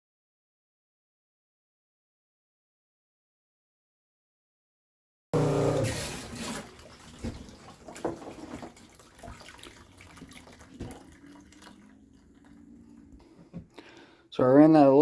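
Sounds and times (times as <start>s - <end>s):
liquid splashing into a bottle: 5.8s - 12.6s.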